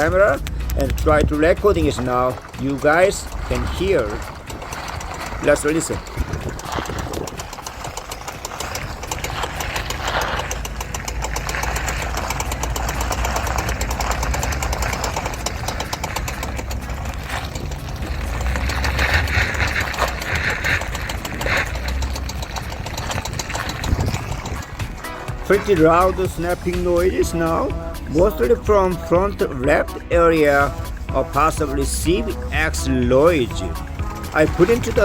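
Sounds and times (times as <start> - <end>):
rapid loud snapping and clicking: 0.0 - 26.7
engine running: 0.0 - 35.0.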